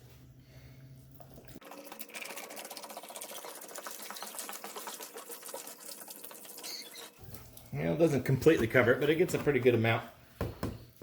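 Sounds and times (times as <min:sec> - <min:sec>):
liquid pouring into a tub: 0:01.2 - 0:07.6.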